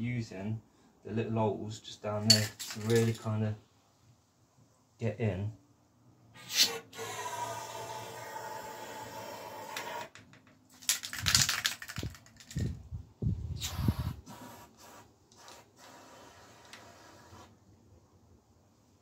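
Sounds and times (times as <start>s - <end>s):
handling knocks and clicks: 2.2s - 3.3s, 10.1s - 12.8s.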